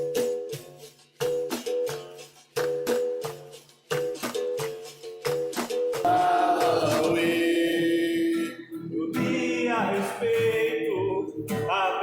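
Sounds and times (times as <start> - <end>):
acoustic guitar strumming: 6.0 - 12.0
man singing: 6.1 - 12.0.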